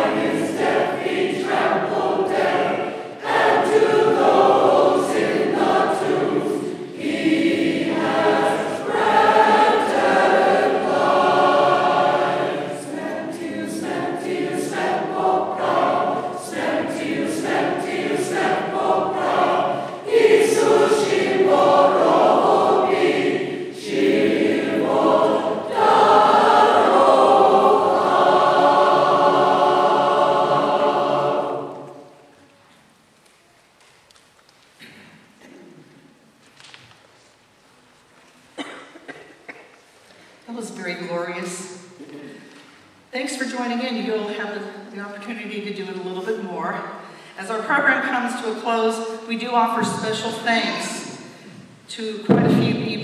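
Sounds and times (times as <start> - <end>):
choir singing: 0.0 - 32.5
singers breathing: 47.0 - 47.4, 51.2 - 51.8.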